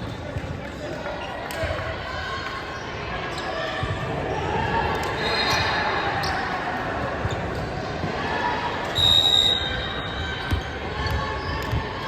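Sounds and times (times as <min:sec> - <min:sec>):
players' voices: 0:00.0 - 0:12.0
referee's whistle blast: 0:09.0 - 0:10.1.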